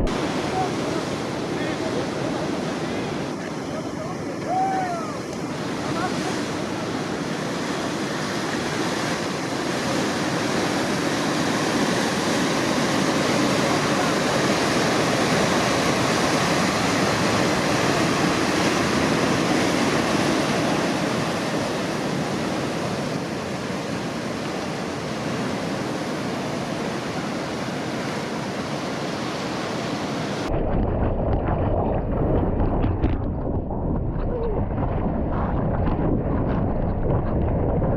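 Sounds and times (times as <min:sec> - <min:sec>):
muffled low rumble: 0:00.0 - 0:04.7, 0:30.4 - 0:37.9
ocean waves breaking: 0:00.0 - 0:30.5.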